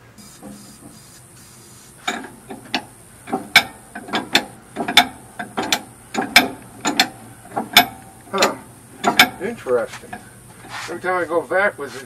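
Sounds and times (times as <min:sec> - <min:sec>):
metallic ratcheting clicks: 0:02.0 - 0:10.3.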